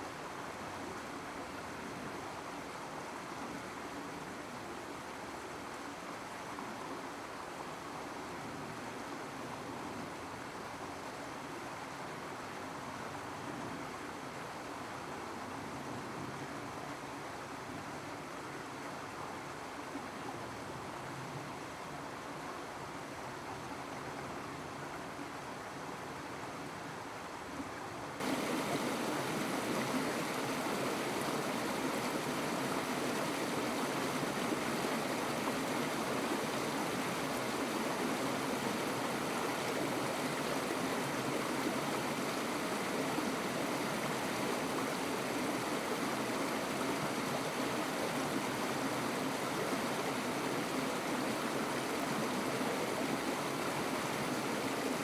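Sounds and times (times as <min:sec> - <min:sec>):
rushing water: 0:28.2 - 0:55.0.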